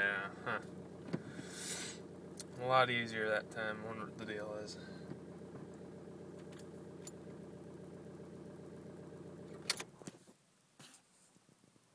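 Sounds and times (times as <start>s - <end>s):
diesel engine idling: 0.0s - 9.7s
engine shutting off click: 0.5s - 2.6s, 4.0s - 10.0s.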